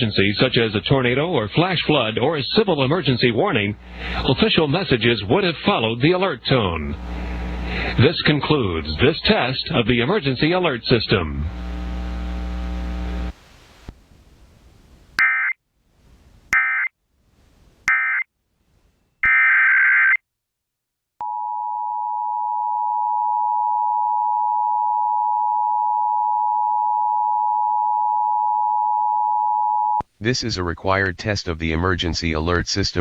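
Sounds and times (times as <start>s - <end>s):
low hum: 3.6s - 4.4s, 6.7s - 8.1s, 11.2s - 14.0s.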